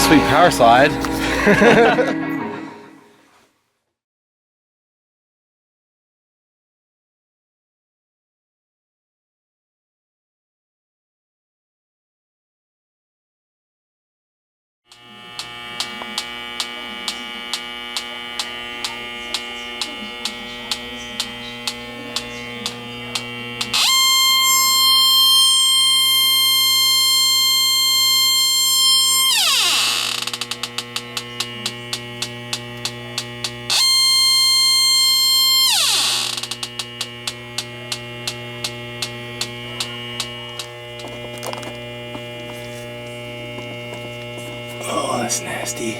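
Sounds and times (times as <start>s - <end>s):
steady hum: 0.0s - 2.9s, 15.0s - 45.9s
high-pitched alarm tone: 0.0s - 3.0s, 15.0s - 41.5s
leak detector ticking: 14.9s - 44.9s.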